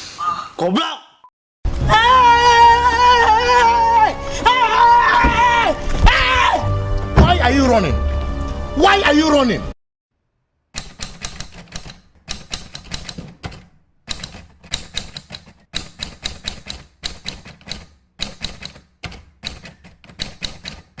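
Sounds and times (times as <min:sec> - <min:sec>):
typewriter keystroke clacks: 0:10.8 - 0:21.0.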